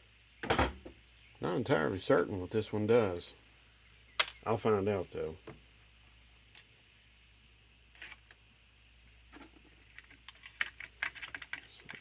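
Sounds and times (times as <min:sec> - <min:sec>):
metal parts clicking: 0:09.4 - 0:12.0.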